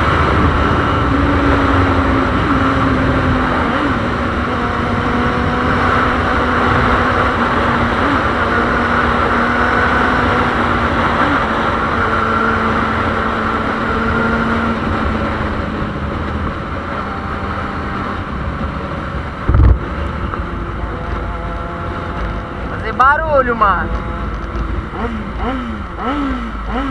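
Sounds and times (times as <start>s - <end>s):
motorcycle engine cruising: 0.0s - 26.9s
wind rushing over microphone: 0.0s - 26.9s
short low thump: 19.4s - 19.9s.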